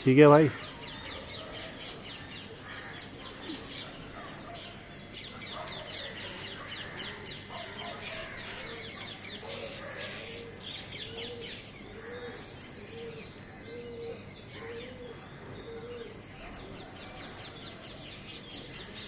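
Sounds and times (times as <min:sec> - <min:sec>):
small birds chirping: 0:00.0 - 0:19.0
pigeon cooing: 0:07.6 - 0:17.6.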